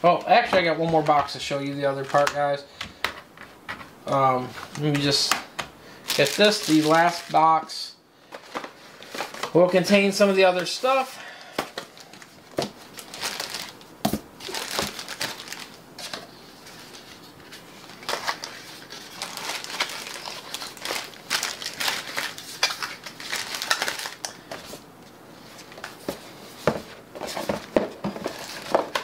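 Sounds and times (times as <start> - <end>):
packaging rustling and crinkling: 6.0 - 7.5, 8.3 - 29.0.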